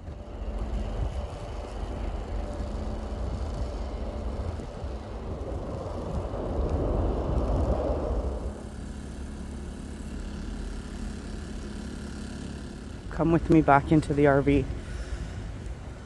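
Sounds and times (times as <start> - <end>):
steady low rumble: 0.0 - 16.0
vehicle passing: 4.0 - 10.2.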